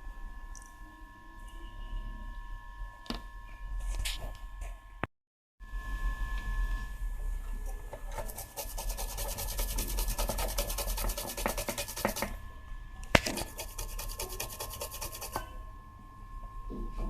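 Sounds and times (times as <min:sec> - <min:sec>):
quick rubbing strokes: 0:08.2 - 0:12.3.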